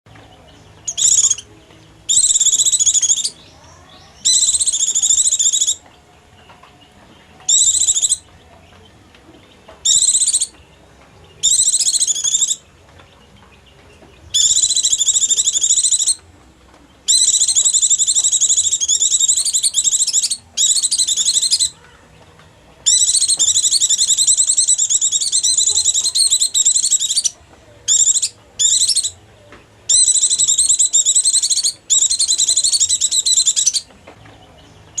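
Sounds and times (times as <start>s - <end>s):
white-eye bird twittering: 0.9s - 1.5s, 2.1s - 5.8s, 7.5s - 8.3s, 9.8s - 10.5s, 11.4s - 12.6s, 14.3s - 16.2s, 17.1s - 21.8s, 22.9s - 29.2s, 29.9s - 33.9s.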